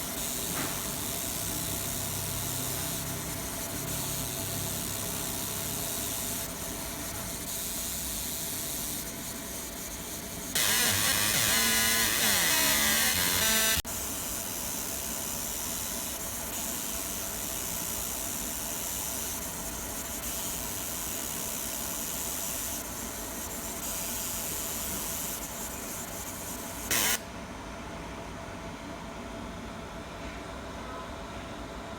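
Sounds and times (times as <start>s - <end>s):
laser engraving hiss: 0.0s - 27.2s.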